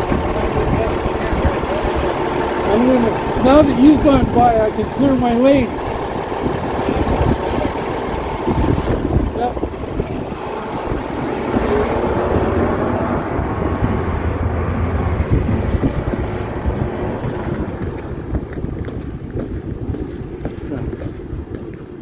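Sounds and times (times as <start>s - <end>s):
snowblower engine running: 0.0s - 21.5s.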